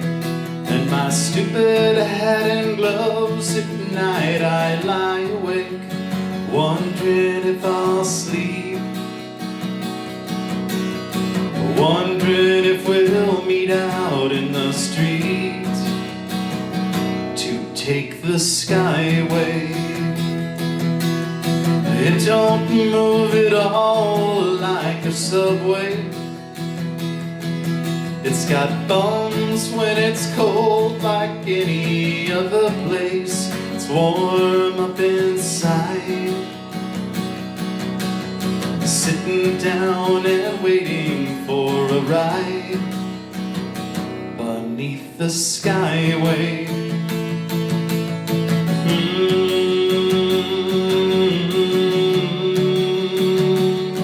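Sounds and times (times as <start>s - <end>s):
acoustic guitar strummed: 0.0s - 54.0s
person singing: 0.7s - 9.1s, 11.5s - 16.0s, 17.4s - 20.4s, 21.8s - 26.1s, 28.2s - 36.6s, 38.7s - 43.0s, 44.4s - 47.3s, 48.6s - 54.0s.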